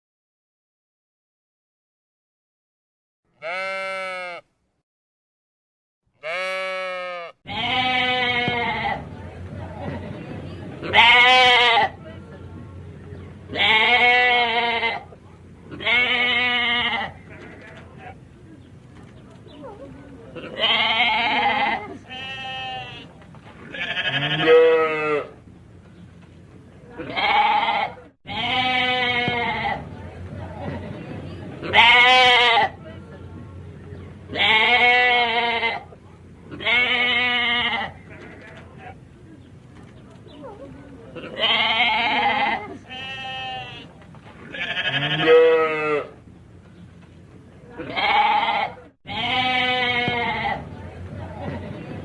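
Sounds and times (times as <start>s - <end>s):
sheep bleating: 3.4s - 4.5s, 6.2s - 9.0s, 20.4s - 23.1s, 23.7s - 25.3s, 27.0s - 29.8s, 41.2s - 43.9s, 44.5s - 46.1s, 47.8s - 50.7s.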